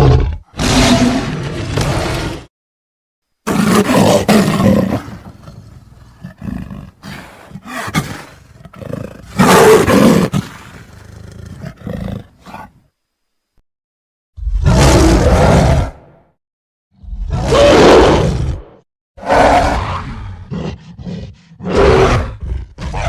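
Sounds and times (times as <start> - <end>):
animal growling: 0.0 - 2.5, 3.5 - 12.8, 17.0 - 23.0
animal roaring: 0.0 - 2.5, 14.4 - 16.2, 17.0 - 23.0.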